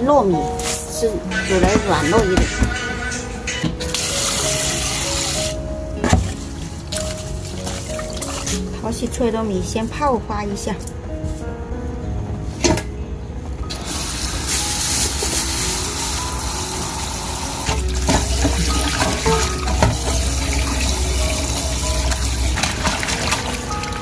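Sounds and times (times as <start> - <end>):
soft background music: 0.0 - 24.0
running water splashing: 3.9 - 8.6, 13.7 - 24.0.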